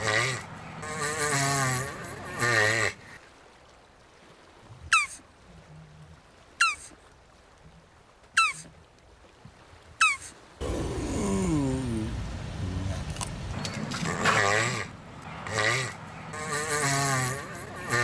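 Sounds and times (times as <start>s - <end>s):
tortoise wavering call: 10.0s - 18.0s.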